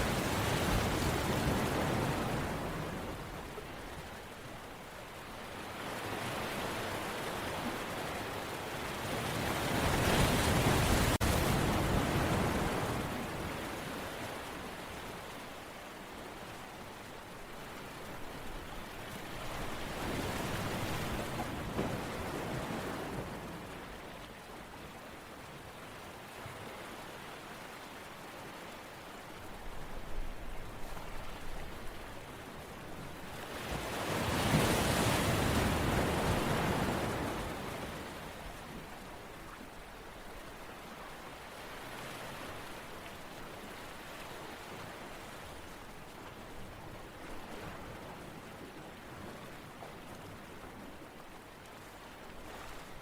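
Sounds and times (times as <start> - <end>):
rushing water: 0.0 - 53.0.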